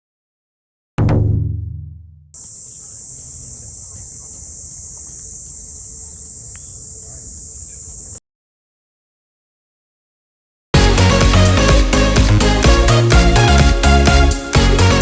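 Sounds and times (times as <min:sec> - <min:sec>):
insects chirring: 0:02.4 - 0:08.2.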